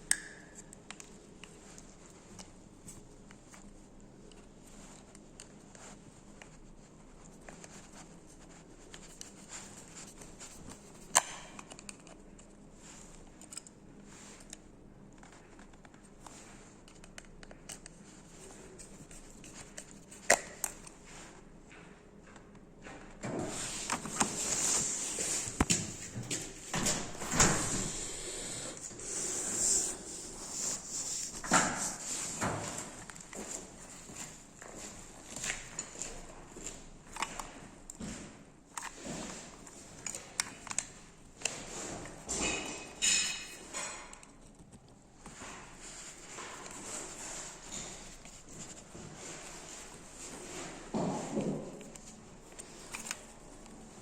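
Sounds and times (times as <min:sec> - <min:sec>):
hands rubbing and scraping plastic: 0:27.6 - 0:34.4.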